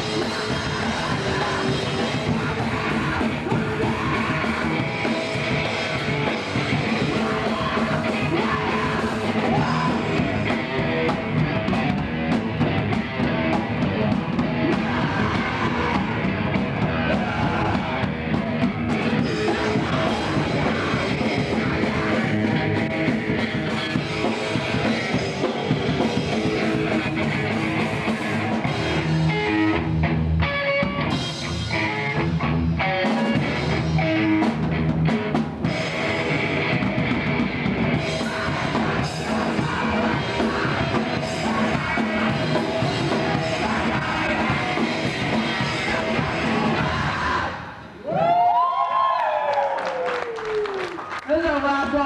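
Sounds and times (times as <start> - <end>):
person singing: 0.0 - 10.9, 13.5 - 24.0, 37.9 - 47.8
drum kit: 0.0 - 47.5
electric guitar: 0.0 - 52.0.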